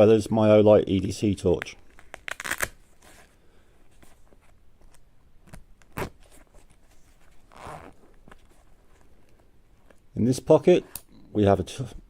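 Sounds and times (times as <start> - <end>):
zip pulled open: 2.2 - 2.8, 5.9 - 6.3, 7.4 - 8.2.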